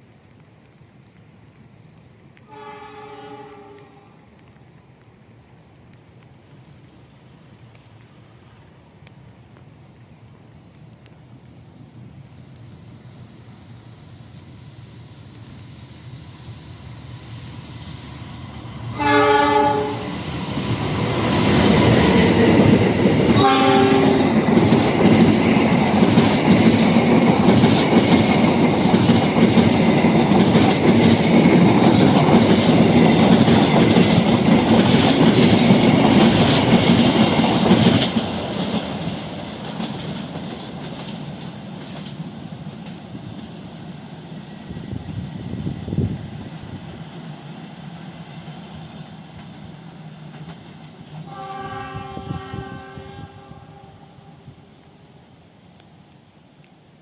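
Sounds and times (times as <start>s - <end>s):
train horn blasts: 2.4s - 4.2s, 18.9s - 20.1s, 23.4s - 24.4s, 51.2s - 54.6s
train wheels clickety-clack: 18.7s - 43.9s, 47.1s - 52.2s.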